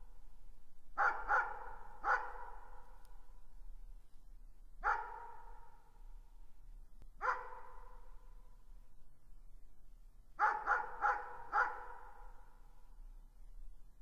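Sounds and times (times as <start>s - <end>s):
distant dog barking: 1.0s - 3.0s, 4.8s - 5.9s, 7.2s - 8.2s, 10.4s - 12.4s.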